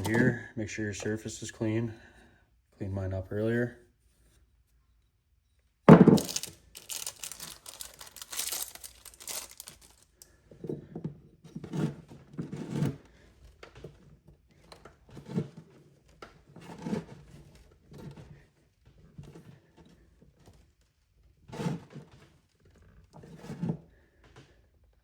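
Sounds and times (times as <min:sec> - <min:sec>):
paper or plastic crinkling: 0:00.0 - 0:00.2, 0:06.1 - 0:10.2
dull knocks on a workbench: 0:05.9 - 0:06.2.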